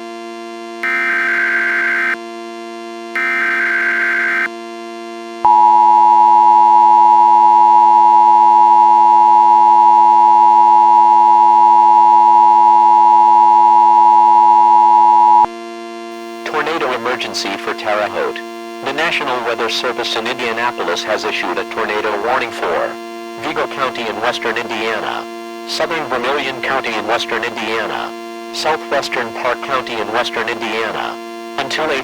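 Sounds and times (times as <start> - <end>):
loud steady alarm tone: 0.0 - 15.5, 16.1 - 32.0
digital data bursts: 16.2 - 32.0.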